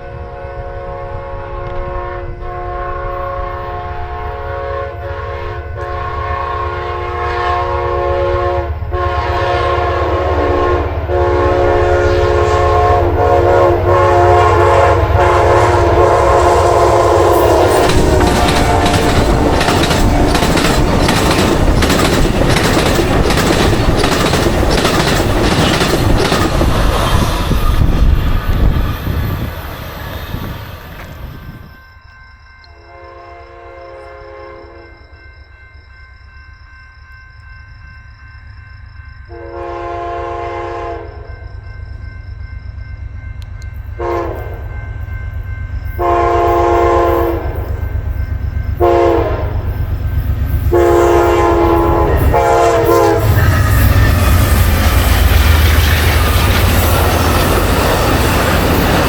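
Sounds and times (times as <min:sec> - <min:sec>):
locomotive horn: 0:00.0 - 0:20.9, 0:32.6 - 0:35.0, 0:39.3 - 0:41.3, 0:44.0 - 0:44.8, 0:46.0 - 0:47.9, 0:48.8 - 0:49.8, 0:50.7 - 0:55.2
passenger train passing: 0:00.0 - 0:59.0
wheels clacking over rail joints: 0:17.7 - 0:28.8, 0:53.3 - 0:59.0.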